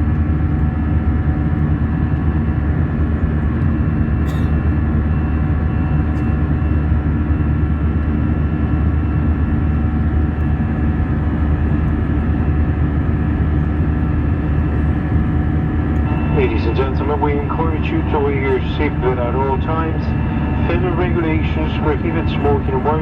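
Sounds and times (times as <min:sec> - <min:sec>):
jet engine cabin rumble: 0:00.0 - 0:23.0
steady whining tones: 0:14.1 - 0:23.0.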